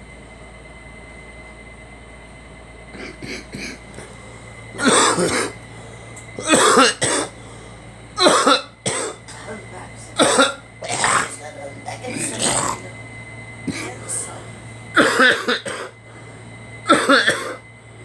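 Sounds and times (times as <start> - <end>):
person coughing: 2.9 - 4.2, 4.8 - 12.9, 13.7 - 16.0, 16.8 - 17.6.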